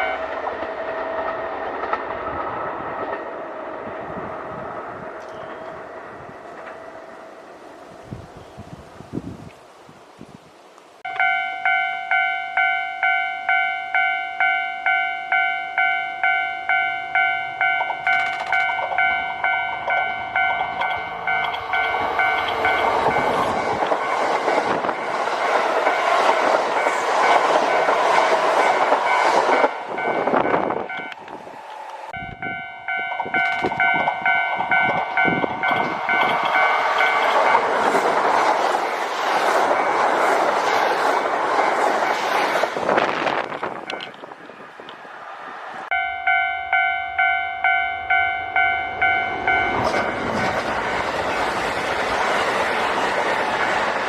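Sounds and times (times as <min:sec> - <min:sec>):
train rumble and wheel clatter: 0:00.0 - 0:09.5, 0:11.1 - 0:54.0
level crossing bell ringing: 0:11.1 - 0:23.3, 0:32.2 - 0:37.6, 0:45.9 - 0:50.2.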